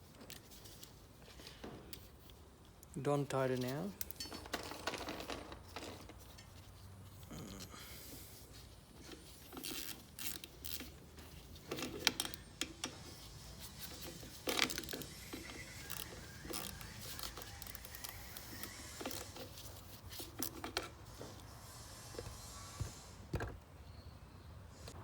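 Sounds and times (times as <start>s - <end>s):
metallic clicks of bolts and tools: 4.0s - 6.7s.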